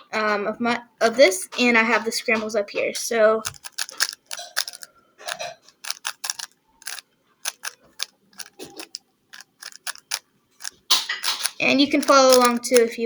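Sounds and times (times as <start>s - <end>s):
puzzle cube plastic clicks: 3.4s - 13.0s.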